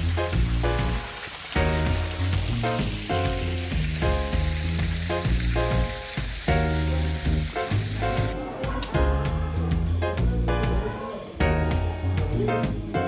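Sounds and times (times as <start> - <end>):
steady sizzling hiss: 0.0 - 8.4
melodic music with bass line: 0.0 - 13.0.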